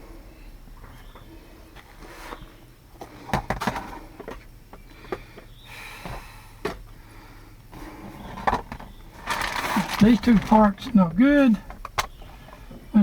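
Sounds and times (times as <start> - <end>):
low steady hum: 0.0 - 13.0
parts clicking and knocking: 7.6 - 13.0.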